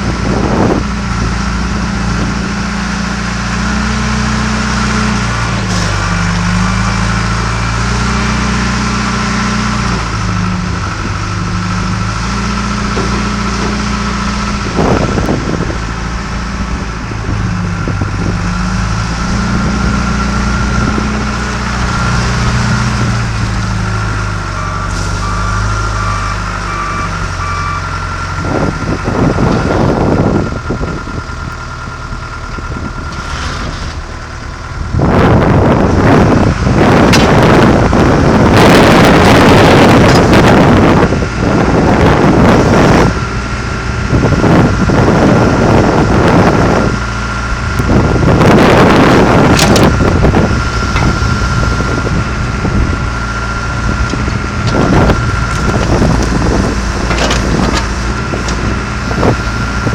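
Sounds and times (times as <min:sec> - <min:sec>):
diesel engine revving: 0:00.0 - 0:59.9
reversing alarm beeping: 0:24.6 - 0:29.2.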